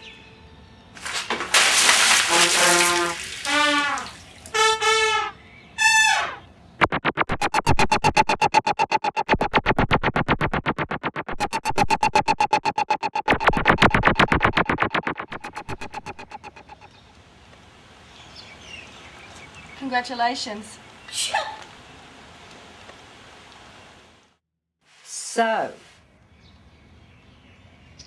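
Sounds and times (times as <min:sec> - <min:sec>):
brass notes sliding down: 0:02.4 - 0:06.4
pulsing synthesizer beat: 0:06.8 - 0:16.9.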